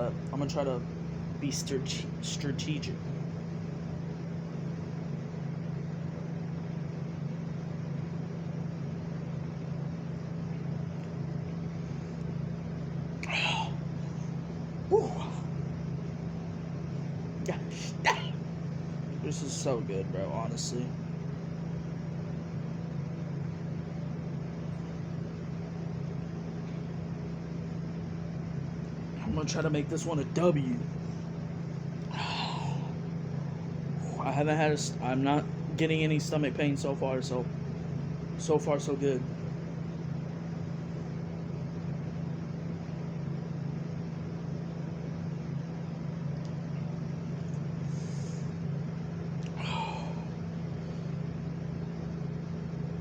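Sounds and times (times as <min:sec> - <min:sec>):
steady low hum: 0:00.0 - 0:53.0.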